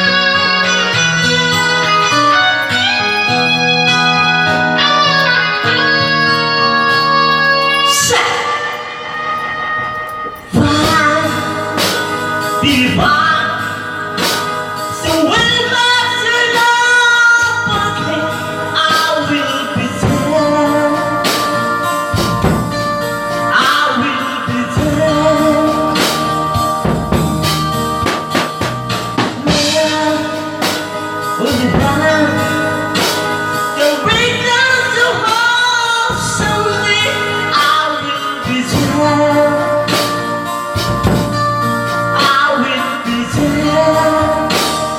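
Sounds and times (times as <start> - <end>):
song with singing and percussion: 0.0 - 44.9.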